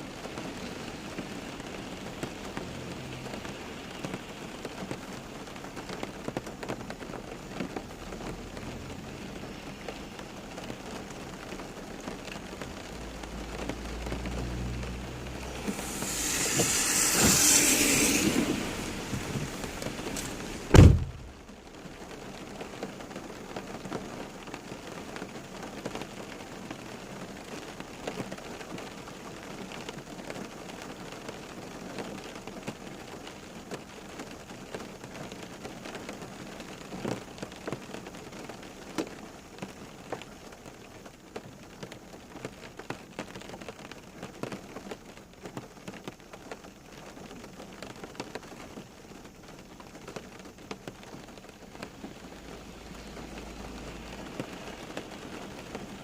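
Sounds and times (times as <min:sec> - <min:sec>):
rain on a hard surface: 0:00.0 - 0:56.0
loud thump: 0:20.7 - 0:21.3.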